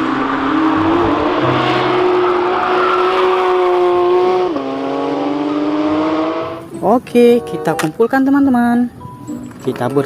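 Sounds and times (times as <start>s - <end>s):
race car engine: 0.0s - 6.7s.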